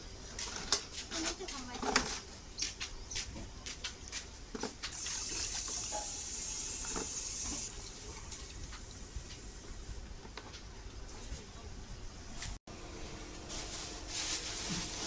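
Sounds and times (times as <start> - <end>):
tap water running into sink: 4.9 - 9.9.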